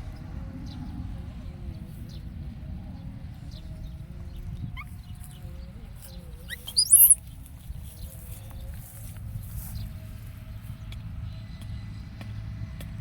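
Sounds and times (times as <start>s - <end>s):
animal chirps and squeaks: 6.4s - 7.2s.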